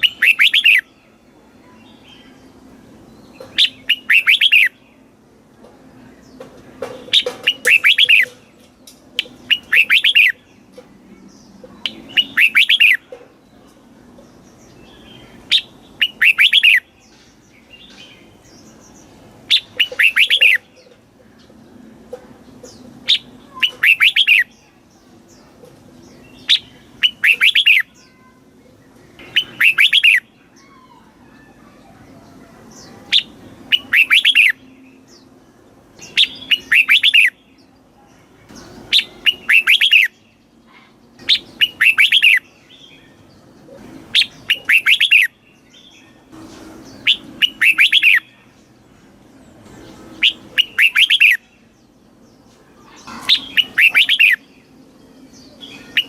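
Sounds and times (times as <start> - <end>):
bird singing whistled phrases: 0.0 - 0.9, 3.6 - 4.8, 7.5 - 8.3, 9.5 - 10.4, 11.8 - 13.0, 15.5 - 16.9, 19.5 - 20.6, 23.1 - 24.5, 26.5 - 28.2, 29.2 - 31.0, 33.1 - 34.6, 36.1 - 37.4, 38.9 - 40.2, 41.3 - 42.5, 44.2 - 45.4, 47.0 - 48.4, 50.2 - 51.5, 53.4 - 54.5.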